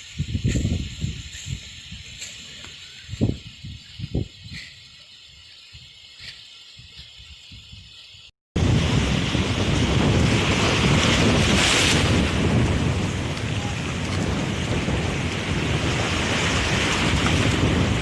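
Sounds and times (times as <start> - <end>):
wind buffeting microphone: 0.0 - 8.0, 8.6 - 18.0
sea waves washing onto shore: 8.6 - 18.0.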